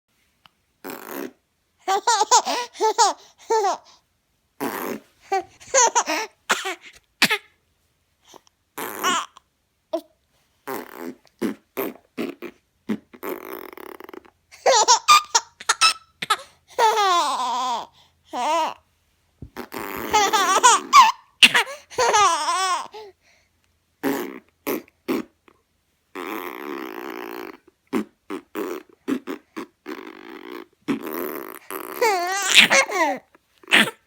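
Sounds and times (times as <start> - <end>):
buzzy fart noise: 0.8 - 1.4, 10.7 - 14.9, 19.4 - 20.8, 24.0 - 25.3, 26.1 - 32.9, 33.7 - 34.0
young child laughing: 19.8 - 22.4.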